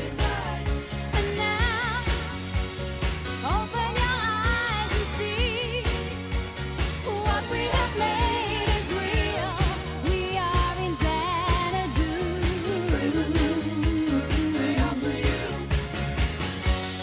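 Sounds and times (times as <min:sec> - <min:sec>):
pop song with singing: 0:00.0 - 0:17.0.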